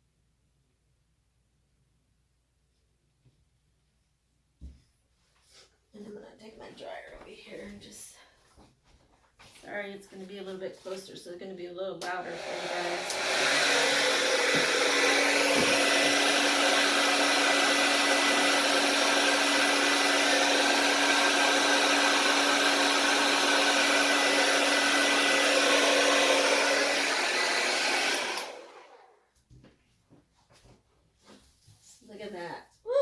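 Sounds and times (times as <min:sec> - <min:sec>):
blow dryer running: 0:12.0 - 0:29.2.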